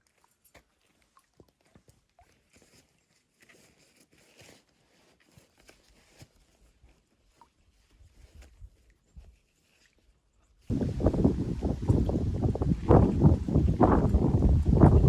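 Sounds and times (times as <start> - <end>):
footsteps crunching on a trail: 10.7 - 15.0.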